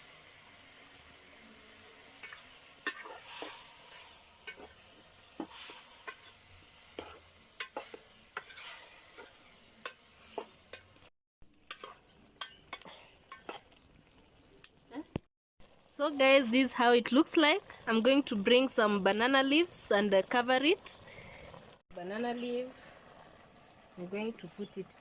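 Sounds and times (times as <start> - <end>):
sizzling hiss: 0.0 - 25.0
spoon scraping in pot: 2.2 - 10.9, 11.6 - 13.8.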